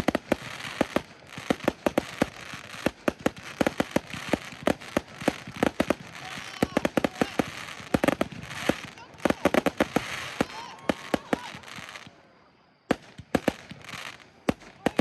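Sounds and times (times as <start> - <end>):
fireworks bangs: 0.0 - 15.0
fireworks crackling: 0.0 - 15.0.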